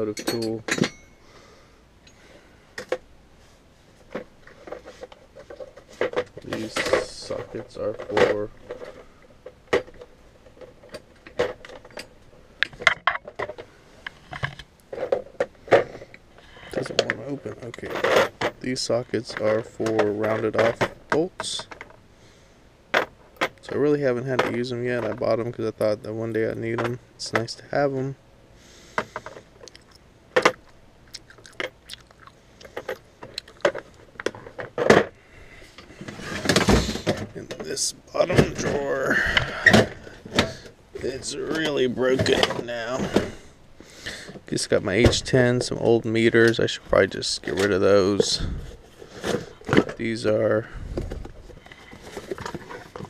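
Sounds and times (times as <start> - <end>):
metal tools clinking in drawer: 0.0 - 1.2.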